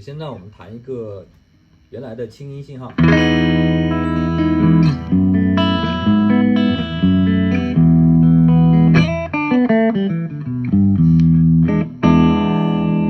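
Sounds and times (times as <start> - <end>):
clean electric guitar: 2.9 - 13.0.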